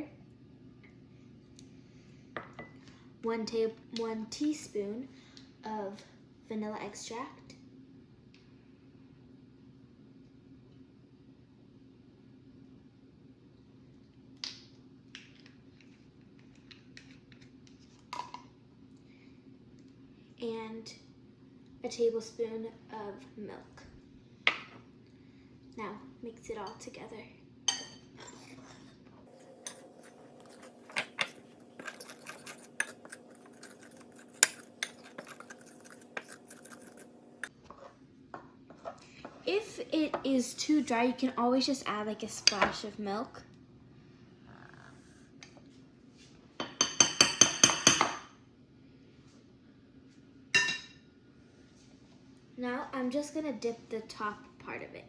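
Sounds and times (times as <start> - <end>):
low steady hum: 0.0 - 46.1
utensils tapping a bowl: 29.3 - 37.5.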